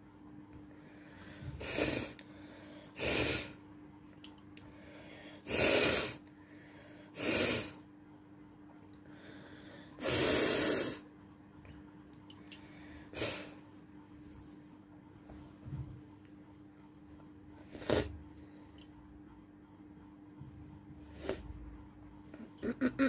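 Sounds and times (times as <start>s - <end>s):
person blowing air through nose: 1.6s - 2.2s, 3.0s - 3.6s, 5.5s - 6.2s, 7.2s - 7.8s, 10.0s - 11.0s, 13.2s - 13.6s.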